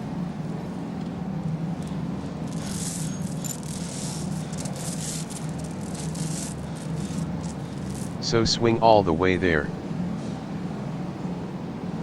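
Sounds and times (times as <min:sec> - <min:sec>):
low machine hum: 0:00.0 - 0:12.0
high rattling and scraping: 0:01.8 - 0:08.2.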